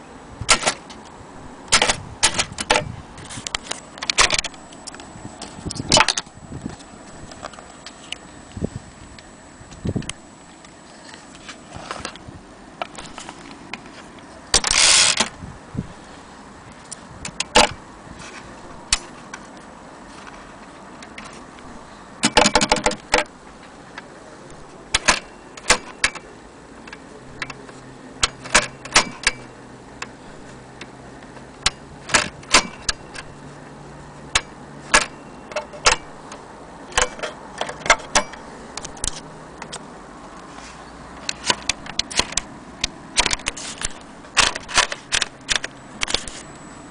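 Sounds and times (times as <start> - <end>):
typewriter key strikes: 24.9 - 26.2, 28.2 - 29.5, 31.6 - 33.3, 34.3 - 36.1.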